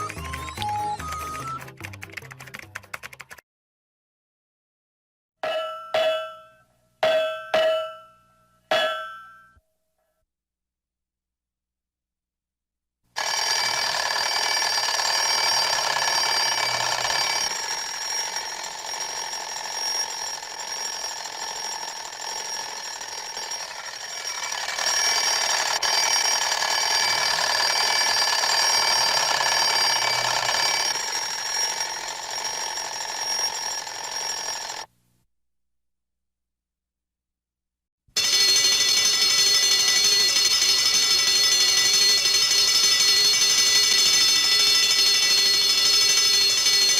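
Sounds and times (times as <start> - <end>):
alarm bell ringing: 5.4 - 9.6, 13.2 - 34.9, 38.2 - 46.9.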